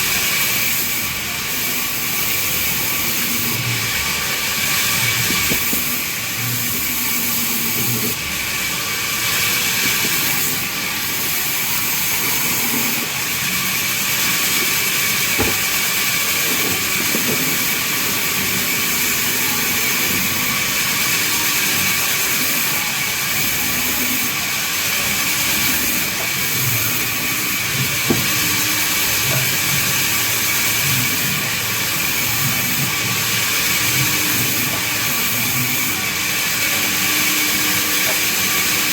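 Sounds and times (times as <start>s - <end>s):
band saw cutting wood: 0.0s - 20.1s, 20.8s - 38.9s
sharp knock: 15.4s - 15.8s.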